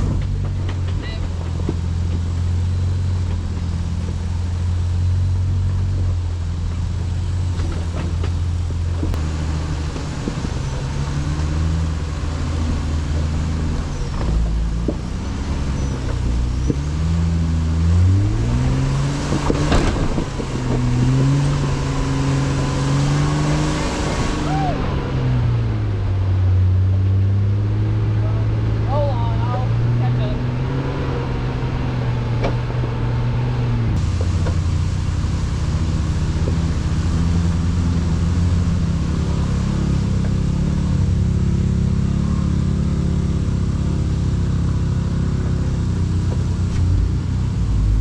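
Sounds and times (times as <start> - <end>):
vehicle knocks and bangs: 0.0 - 2.6, 19.2 - 21.2
vehicle engine revving: 0.0 - 48.0.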